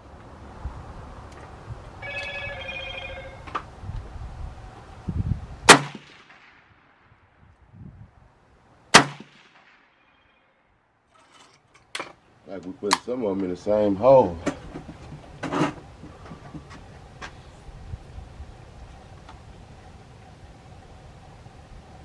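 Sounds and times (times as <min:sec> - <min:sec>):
rifle shots: 0:05.7 - 0:06.8, 0:08.9 - 0:09.8.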